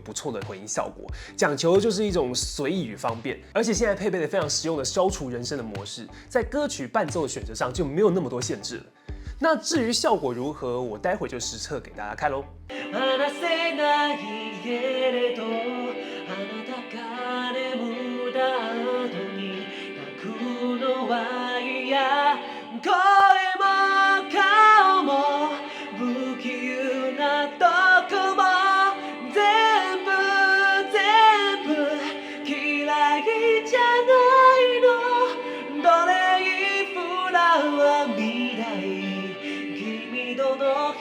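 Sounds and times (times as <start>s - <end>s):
backing music: 0.0s - 10.4s
person singing: 12.7s - 41.0s.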